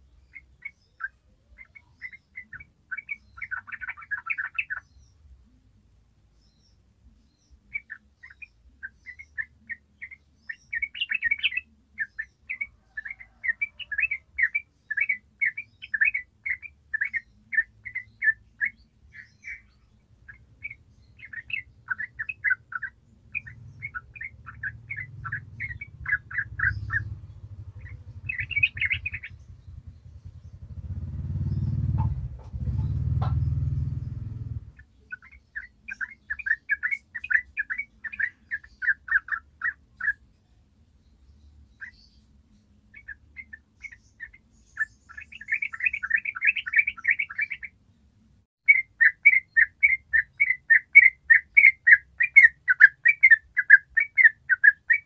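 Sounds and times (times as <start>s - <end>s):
bird chattering song: 0.0s - 48.0s, 48.6s - 55.0s
low rumble: 23.2s - 34.8s.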